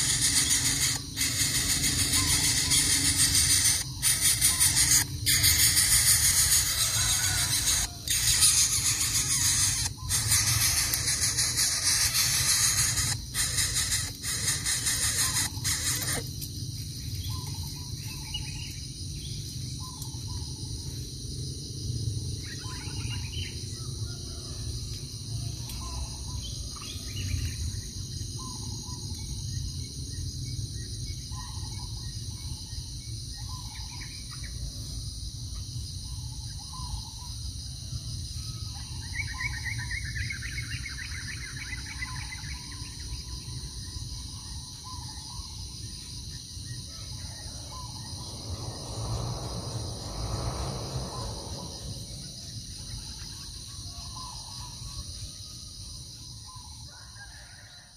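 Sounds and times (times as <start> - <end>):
high bird trill: 0.0 - 18.8
insects droning: 0.0 - 57.9.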